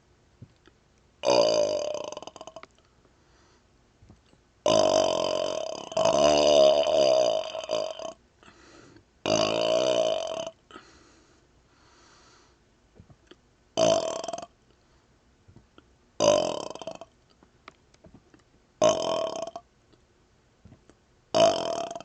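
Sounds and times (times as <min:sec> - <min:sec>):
man burping loudly: 0:01.2 - 0:02.7, 0:04.7 - 0:08.2, 0:09.3 - 0:10.8, 0:13.8 - 0:14.5, 0:16.2 - 0:17.1, 0:18.8 - 0:19.6, 0:21.4 - 0:22.0.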